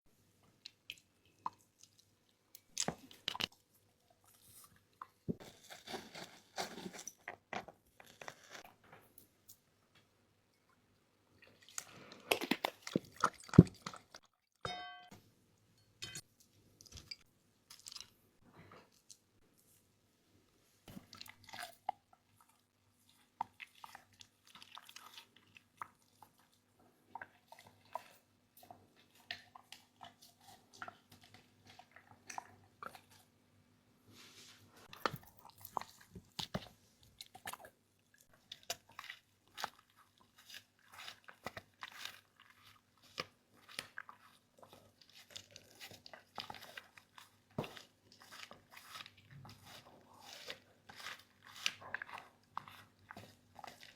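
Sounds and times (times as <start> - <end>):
dog chewing something crunchy: 38.5 - 53.9.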